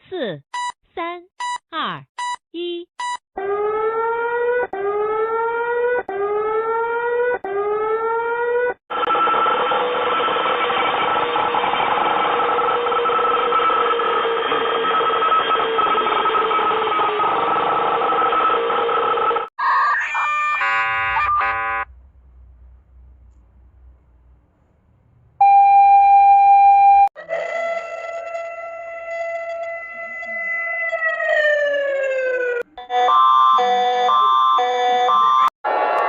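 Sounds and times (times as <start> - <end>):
harsh buzzing alarm tone: 8.9 - 21.9.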